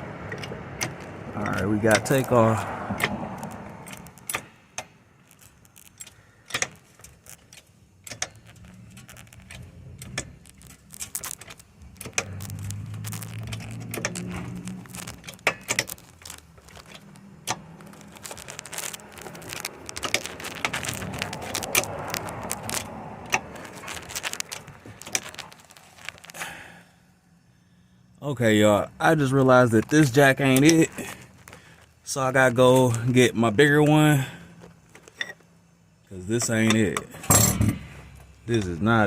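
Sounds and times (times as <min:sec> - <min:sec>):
metal clicks of car jack: 0:00.2 - 0:02.3, 0:02.9 - 0:03.2, 0:03.8 - 0:05.0, 0:05.8 - 0:10.4, 0:36.4 - 0:38.3.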